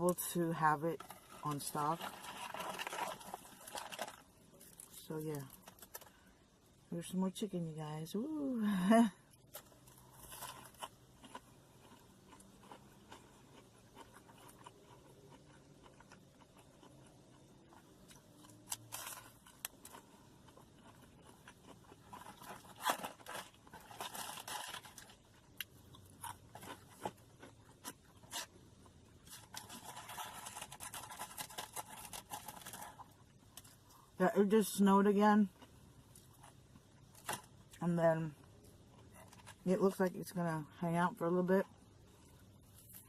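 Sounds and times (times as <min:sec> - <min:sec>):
person crunching and chewing: 0:00.9 - 0:06.2, 0:09.4 - 0:34.2, 0:38.4 - 0:39.6.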